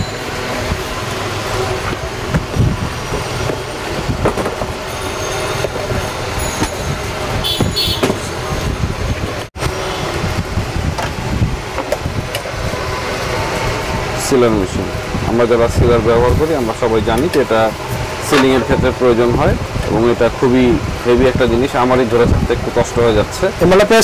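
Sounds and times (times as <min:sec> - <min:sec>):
street traffic noise: 0:00.0 - 0:24.0
clatter and knocks: 0:01.8 - 0:04.8.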